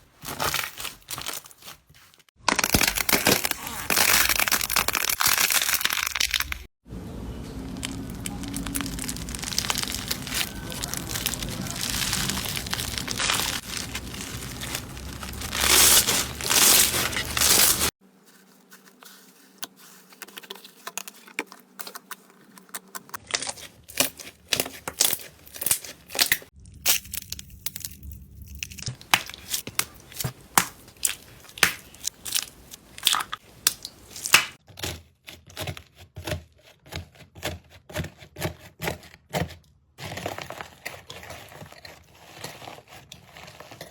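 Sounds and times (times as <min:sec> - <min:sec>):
slime squishing and crackling: 0:00.2 - 0:06.7, 0:07.6 - 0:18.0, 0:19.8 - 0:34.6.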